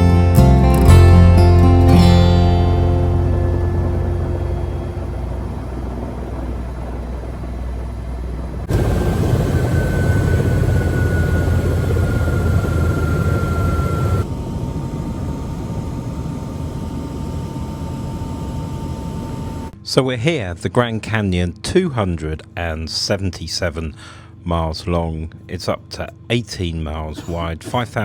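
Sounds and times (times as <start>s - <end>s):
helicopter rotor rumble: 1.0s - 19.8s
high turbine whine: 1.0s - 19.8s.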